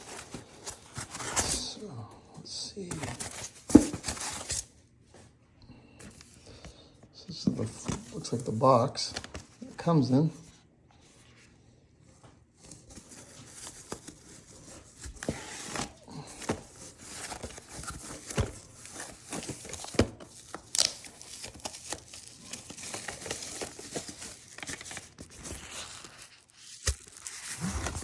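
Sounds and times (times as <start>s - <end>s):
packaging crinkling and tearing: 12.9s - 28.0s.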